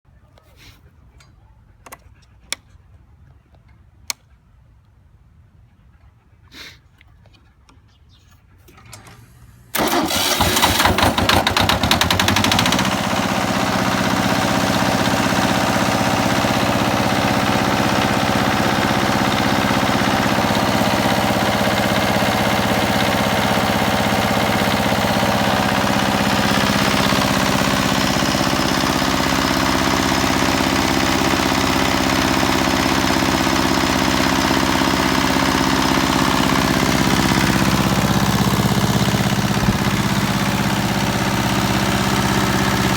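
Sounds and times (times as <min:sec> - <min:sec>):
diesel generator starting and running: 0:08.6 - 0:42.9.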